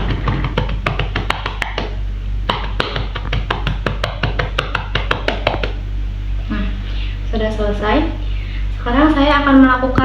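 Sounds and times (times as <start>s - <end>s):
hands tapping on a back: 0.0s - 5.8s.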